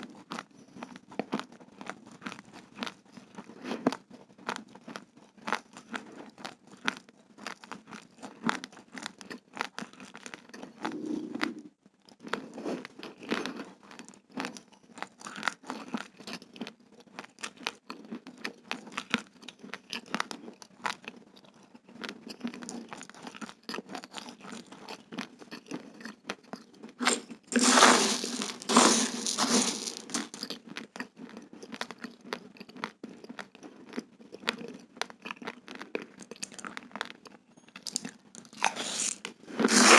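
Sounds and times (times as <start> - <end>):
raw rice crunching between teeth: 27.0 - 30.6, 37.9 - 39.9.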